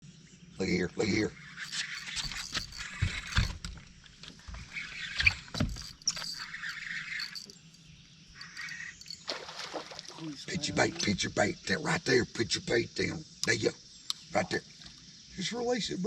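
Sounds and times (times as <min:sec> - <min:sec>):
water sloshing and splashing: 0:08.4 - 0:11.0.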